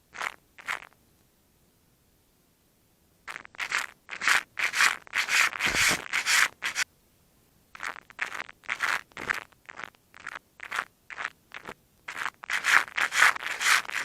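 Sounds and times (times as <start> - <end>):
sandpaper rubbing on wood: 4.2 - 6.8, 12.2 - 14.0.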